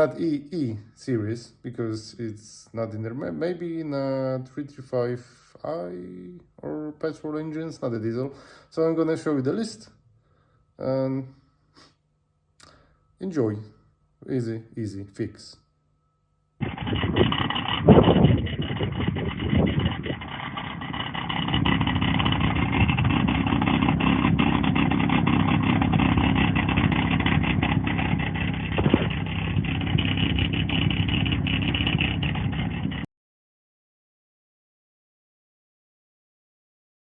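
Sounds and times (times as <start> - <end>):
car engine idling: 16.6 - 33.0
exhaust flap rattling: 16.6 - 33.0.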